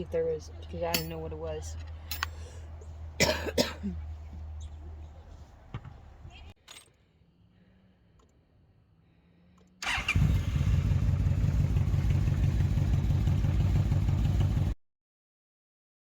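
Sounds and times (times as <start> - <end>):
motorcycle engine running: 9.8 - 14.8.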